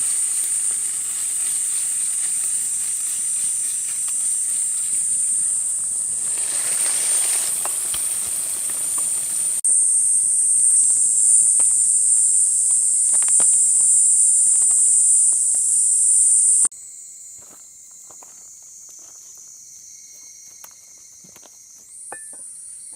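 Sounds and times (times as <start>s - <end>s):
food hissing in a skillet: 0.0s - 9.6s
fire crackling: 0.0s - 16.7s
high-pitched insect drone: 0.0s - 22.9s.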